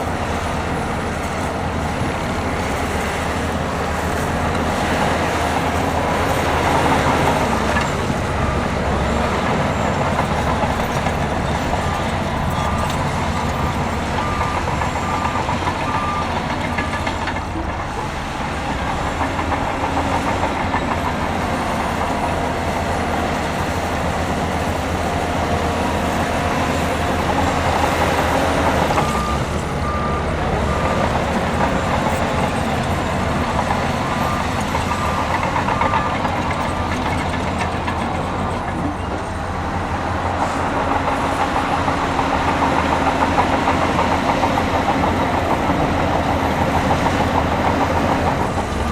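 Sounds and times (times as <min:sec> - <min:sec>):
heavy diesel machinery running: 0:00.0 - 0:48.9
reversing alarm beeping: 0:05.8 - 0:19.0, 0:26.2 - 0:39.2.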